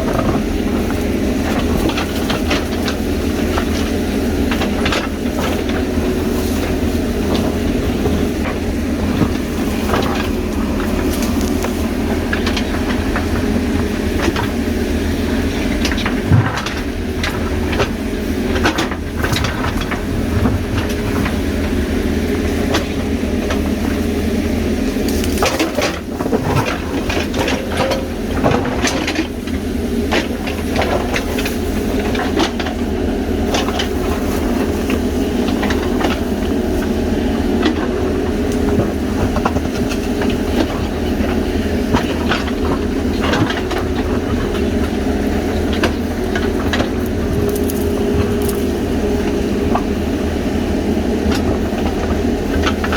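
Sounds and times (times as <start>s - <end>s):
clanks and crunches of soil: 0.0s - 52.9s
diesel engine running: 0.0s - 52.9s.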